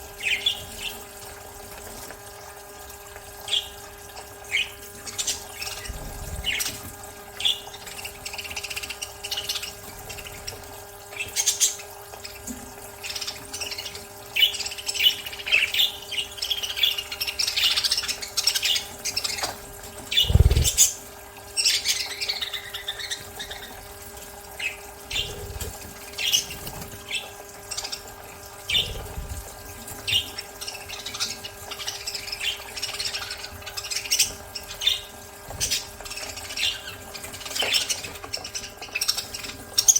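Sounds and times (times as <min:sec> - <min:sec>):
budgerigars chirping and squawking: 0:00.2 - 0:01.0, 0:04.4 - 0:21.0, 0:21.6 - 0:23.8, 0:24.5 - 0:39.9
steady low hum: 0:20.1 - 0:21.1, 0:28.5 - 0:30.6.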